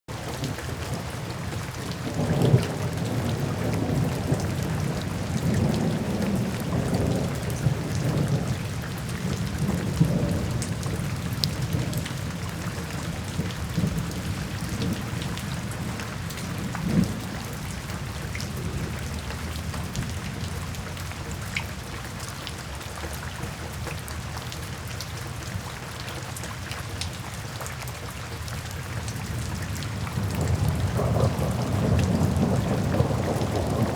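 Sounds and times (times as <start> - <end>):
rain on a window: 0.1 - 33.9
low thunder rumbling: 0.4 - 21.4, 29.2 - 33.9.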